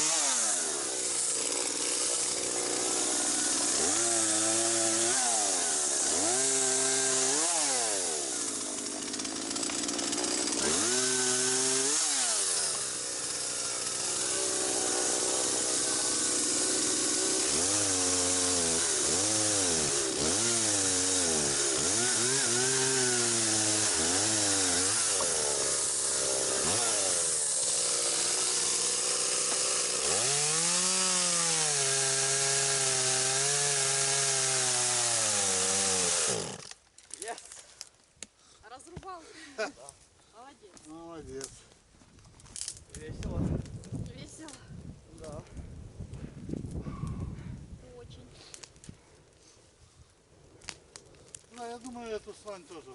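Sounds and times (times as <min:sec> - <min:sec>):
chainsaw cutting branches: 0:00.0 - 0:37.2.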